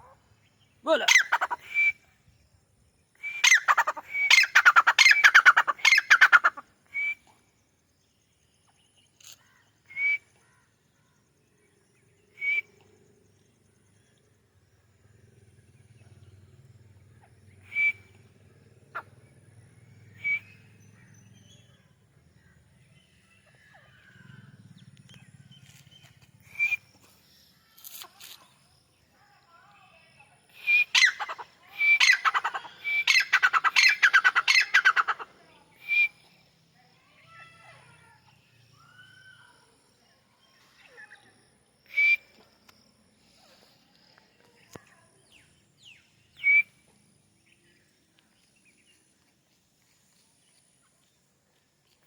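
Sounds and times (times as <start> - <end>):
francolin calling: 0.0 - 2.3, 3.2 - 7.3, 17.2 - 21.8, 29.8 - 36.5, 40.5 - 43.7, 45.2 - 46.8
faint low hum: 10.4 - 30.6.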